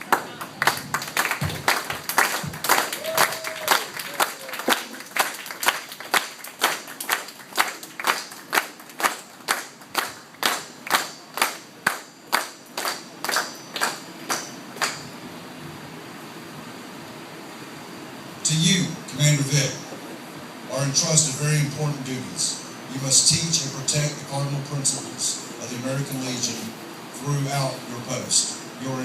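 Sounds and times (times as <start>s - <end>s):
audience applause: 0.0s - 15.0s.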